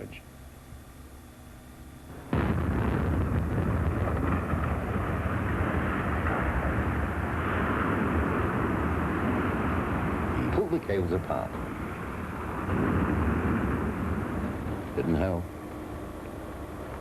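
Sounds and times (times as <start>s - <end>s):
explosion blast: 2.1s - 15.5s
heavy sustained rumble: 2.1s - 17.0s.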